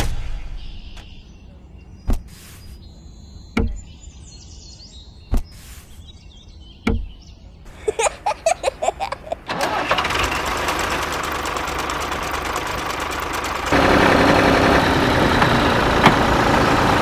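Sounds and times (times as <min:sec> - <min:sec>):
dull knocks: 0:06.9 - 0:07.2
small engine cutting off: 0:09.4 - 0:17.0.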